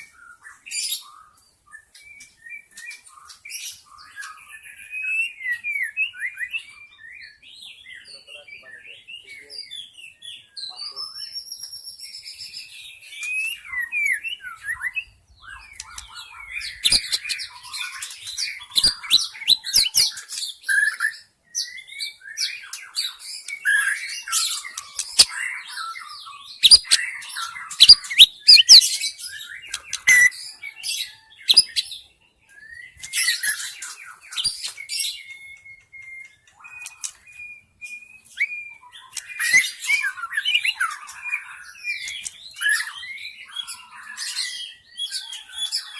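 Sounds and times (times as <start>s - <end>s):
bird singing whistles and trills: 0.0s - 45.9s.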